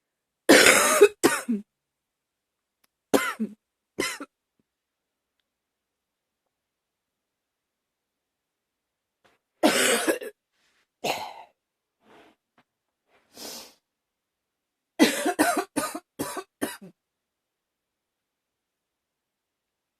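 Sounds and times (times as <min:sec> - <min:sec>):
woman coughing: 0:00.5 - 0:01.6, 0:03.2 - 0:04.3, 0:09.6 - 0:10.4, 0:15.0 - 0:17.0
quiet breath: 0:13.1 - 0:13.9.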